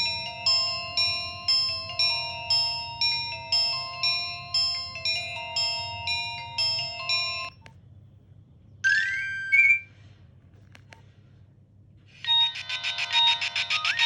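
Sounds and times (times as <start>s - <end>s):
mobile phone ringtone: 0.0s - 7.6s, 8.9s - 9.9s, 12.2s - 14.0s.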